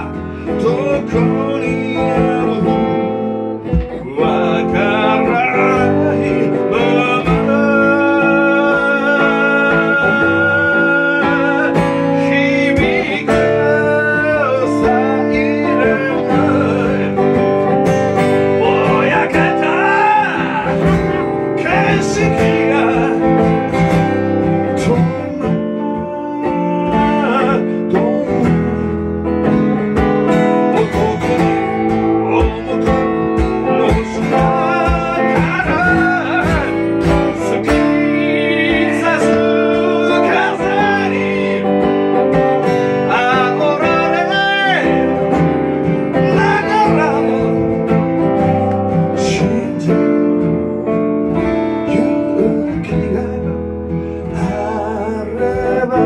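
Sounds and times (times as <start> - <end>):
guitar playing: 0.0 - 56.0
person singing: 0.0 - 56.0.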